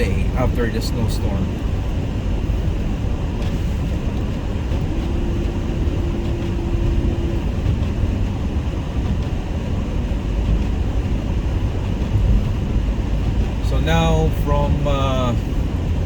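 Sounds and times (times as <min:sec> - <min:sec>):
steady tone: 0:00.0 - 0:09.0
car cabin road and engine noise: 0:00.0 - 0:16.0.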